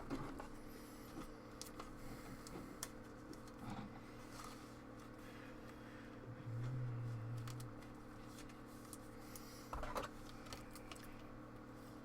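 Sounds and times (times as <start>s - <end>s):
faint steady hum: 0.0s - 12.0s
short low drone: 6.2s - 8.0s.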